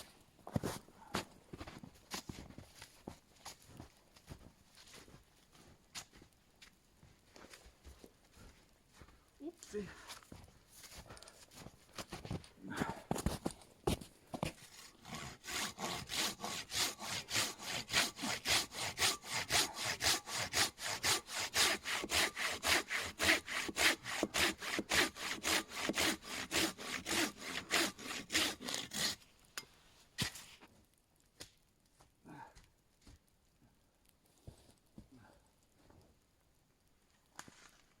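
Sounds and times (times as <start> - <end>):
hand saw cutting log: 14.4 - 29.2.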